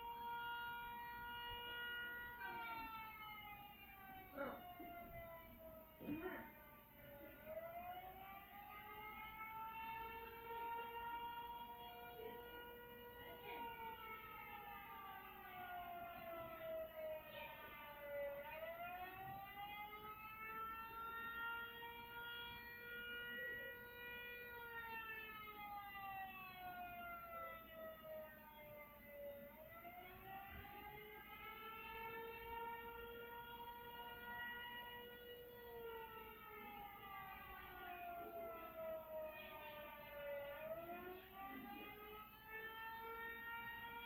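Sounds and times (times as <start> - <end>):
tornado siren wailing: 0.0 - 44.0.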